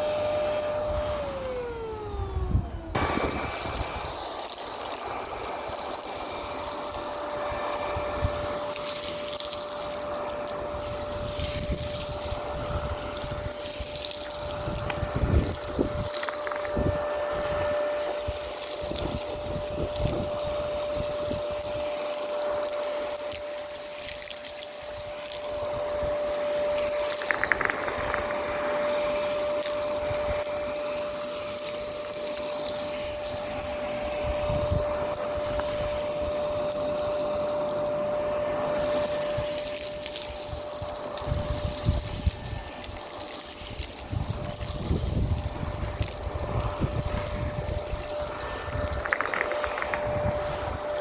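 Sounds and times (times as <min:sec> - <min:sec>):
nozzle crackling sucking up grit: 0:00.0 - 0:51.0
vacuum motor whine: 0:00.0 - 0:51.0
wind rumble on microphone: 0:10.7 - 0:21.8, 0:33.2 - 0:36.7, 0:40.3 - 0:43.0, 0:43.7 - 0:51.0.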